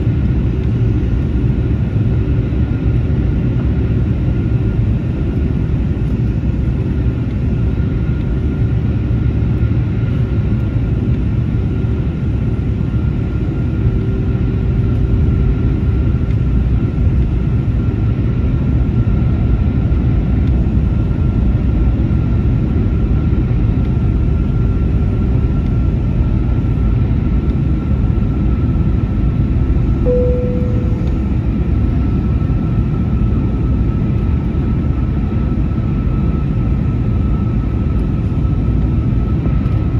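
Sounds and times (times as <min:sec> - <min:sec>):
constant high whine: 0:00.0 - 0:39.9
jet engine drone and airflow: 0:00.0 - 0:39.9
short single tone: 0:30.1 - 0:31.5.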